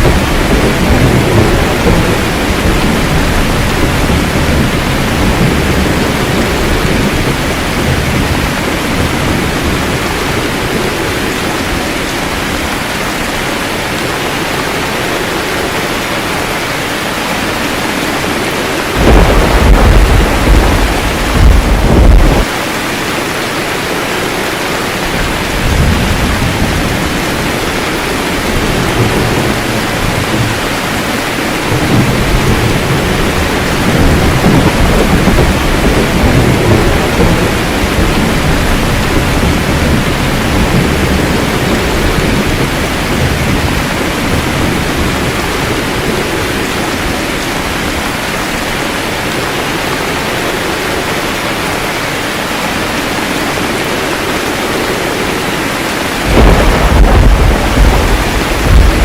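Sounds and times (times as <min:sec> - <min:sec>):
thunder rumbling: 0:00.0 - 0:22.6, 0:23.8 - 0:59.0
heavy rain falling: 0:00.0 - 0:59.0.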